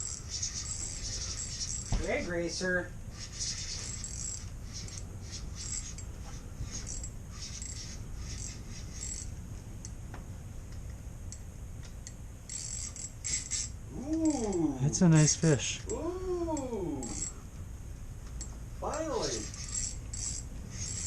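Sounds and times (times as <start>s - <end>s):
fishing reel drag buzzing: 0.0s - 9.4s, 12.4s - 15.3s, 15.9s - 17.4s, 18.8s - 21.0s.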